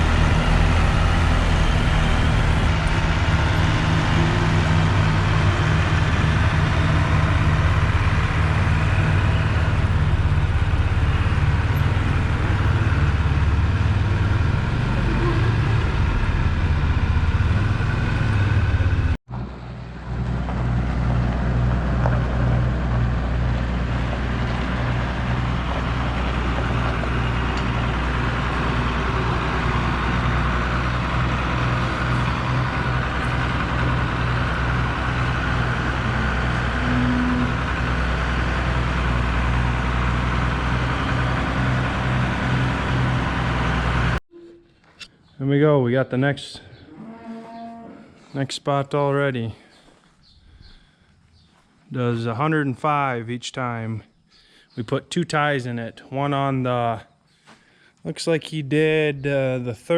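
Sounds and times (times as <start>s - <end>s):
tractor engine throbbing: 0.0s - 45.1s.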